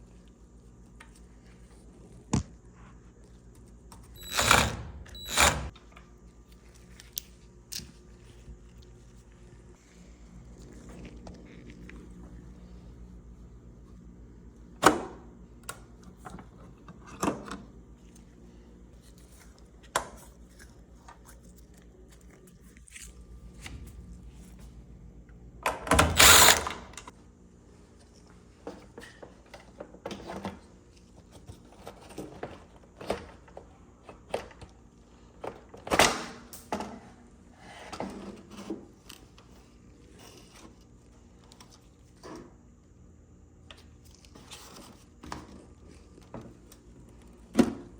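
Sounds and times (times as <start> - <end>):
power driver whirring: 4.2 - 5.7, 26.0 - 27.1.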